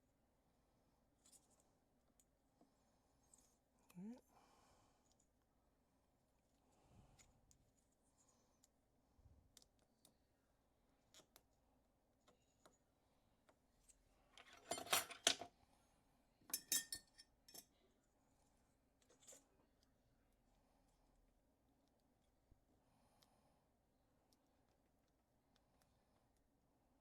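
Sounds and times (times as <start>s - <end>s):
metallic scraping and clinking: 14.4s - 15.5s.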